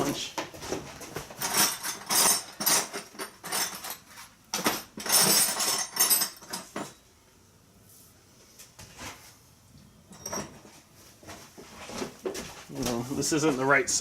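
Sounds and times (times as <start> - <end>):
metal tools clinking together: 1.4 - 7.0, 10.1 - 10.7.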